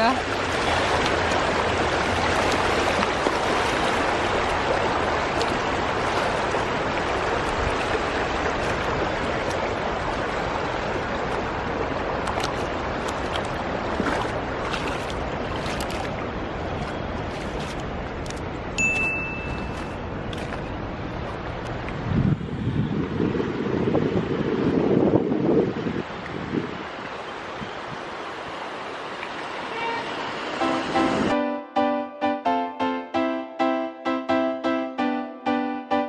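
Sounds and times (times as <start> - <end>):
river water rushing: 0.0 - 22.1, 25.6 - 31.4
high steady tone: 18.8 - 20.1.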